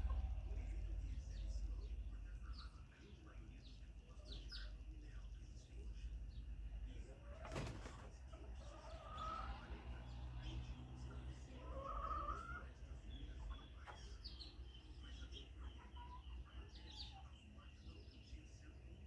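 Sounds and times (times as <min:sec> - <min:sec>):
steady low hum: 0:00.0 - 0:07.2
chickens calling softly: 0:06.9 - 0:18.7.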